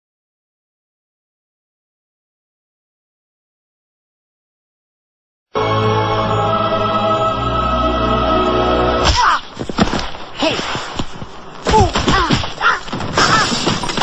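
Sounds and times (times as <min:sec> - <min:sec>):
held musical chord: 0:05.6 - 0:09.0
cartoon scuffle thumps and knocks: 0:09.0 - 0:14.0.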